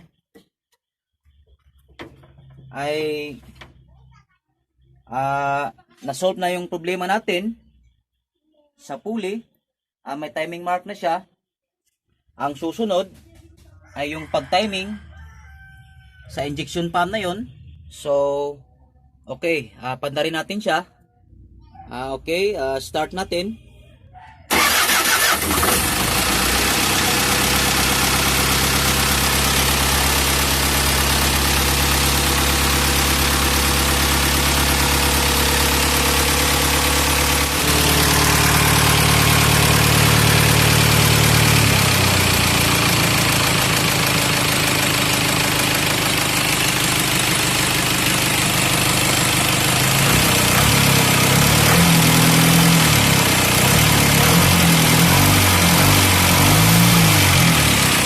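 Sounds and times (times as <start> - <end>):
diesel engine idling: 24.5 - 58.0.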